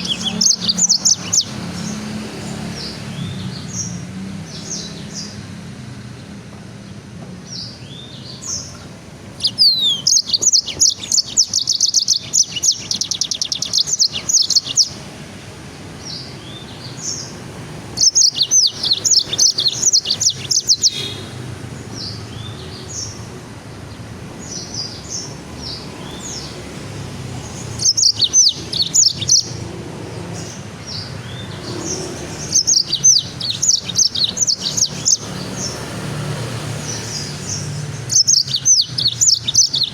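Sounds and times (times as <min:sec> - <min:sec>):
songbird chattering trills: 0:00.0 - 0:03.9, 0:07.6 - 0:15.1, 0:16.0 - 0:21.4, 0:27.3 - 0:36.1, 0:36.8 - 0:39.9
high bird chirps: 0:00.0 - 0:05.4, 0:07.5 - 0:15.1, 0:16.0 - 0:23.3, 0:24.4 - 0:39.9.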